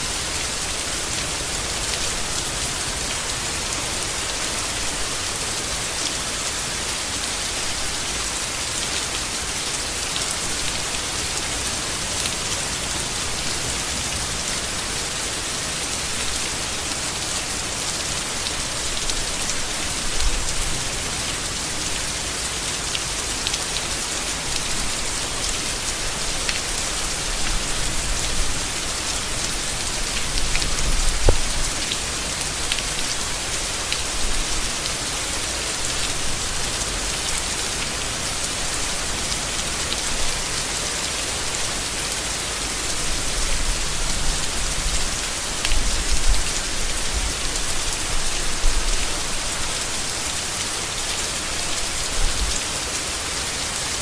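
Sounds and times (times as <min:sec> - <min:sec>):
rain falling on leaves: 0:00.0 - 0:54.0.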